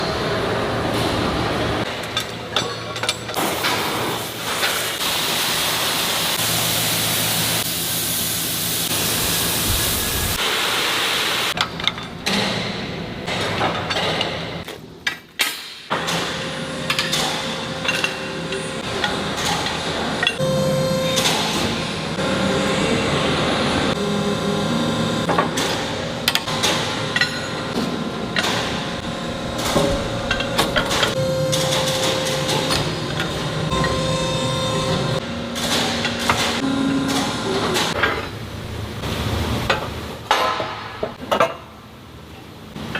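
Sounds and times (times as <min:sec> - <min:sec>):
machine hum and whine: 0:15.9 - 0:40.3.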